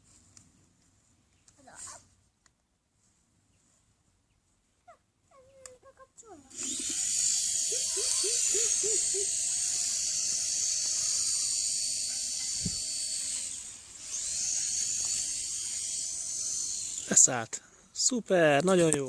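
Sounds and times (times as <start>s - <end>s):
toy helicopter rotor whirring: 6.5s - 17.4s.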